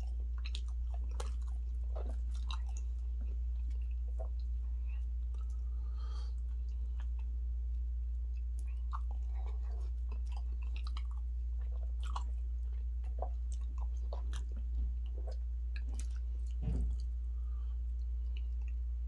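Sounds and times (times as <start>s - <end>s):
chewing and mouth smacks: 0.0s - 5.7s, 6.3s - 17.2s, 18.0s - 18.9s
steady low hum: 0.0s - 19.0s
low knock: 16.6s - 17.0s.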